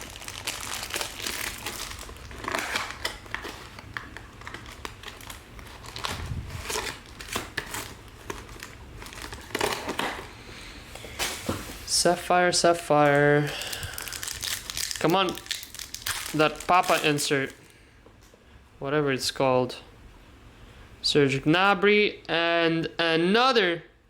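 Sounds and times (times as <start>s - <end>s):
wrapping crinkling and crackling: 0.0s - 11.9s, 13.0s - 18.3s.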